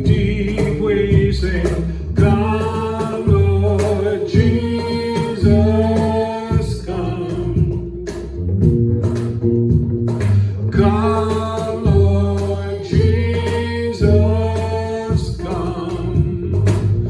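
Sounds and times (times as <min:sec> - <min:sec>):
person singing: 0:00.0 - 0:08.3, 0:10.7 - 0:17.0
band with guitar bass and drums: 0:00.0 - 0:17.0.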